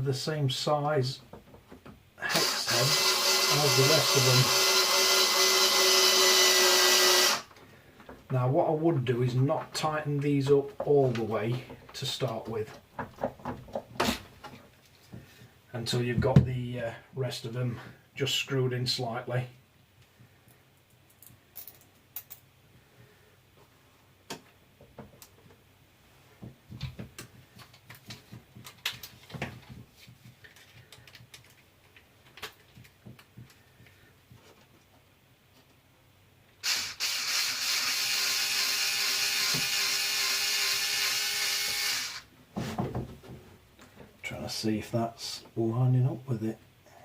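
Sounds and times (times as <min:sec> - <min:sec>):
cordless screwdriver running: 0:02.3 - 0:07.5, 0:36.6 - 0:42.3
screws and plastic parts handled: 0:26.8 - 0:34.9.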